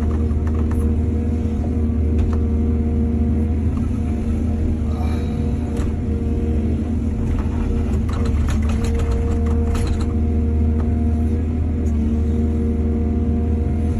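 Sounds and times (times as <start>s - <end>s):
diesel excavator engine running: 0.0s - 13.9s.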